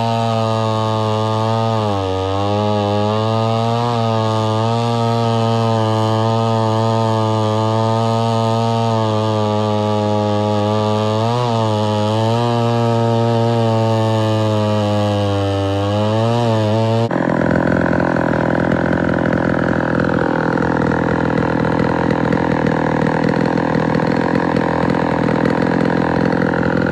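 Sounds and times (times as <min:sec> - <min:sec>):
chainsaw engine revving: 0:00.0 - 0:26.9.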